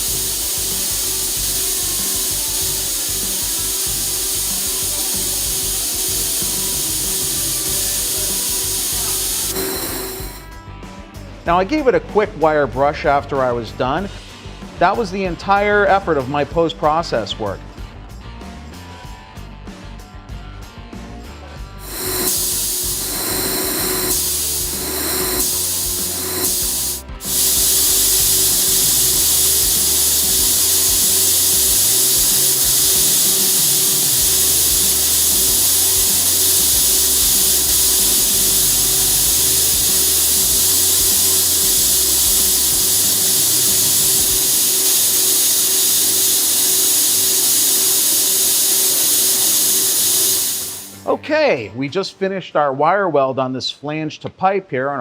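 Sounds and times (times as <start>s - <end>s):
laser welder hissing: 0.0s - 10.5s, 21.8s - 51.1s.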